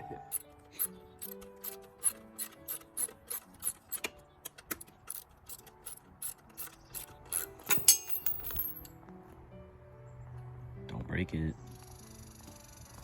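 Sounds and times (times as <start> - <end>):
ratchet wrench clicking: 0.3 - 4.1, 4.7 - 8.8.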